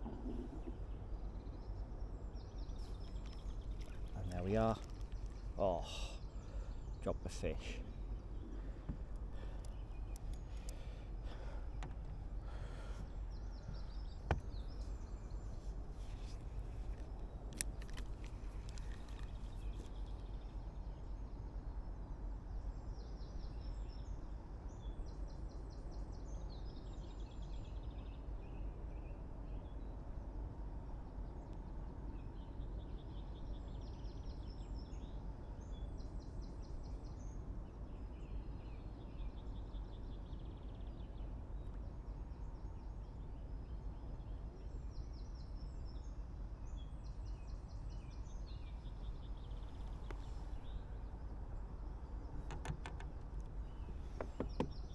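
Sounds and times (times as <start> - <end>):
low outdoor rumble: 0.0 - 21.2
small birds singing: 0.0 - 54.9.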